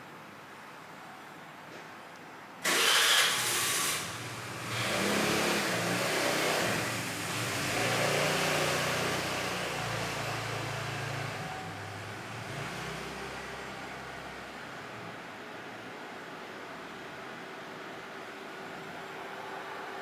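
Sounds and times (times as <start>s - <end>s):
fans rushing air: 2.6s - 11.8s.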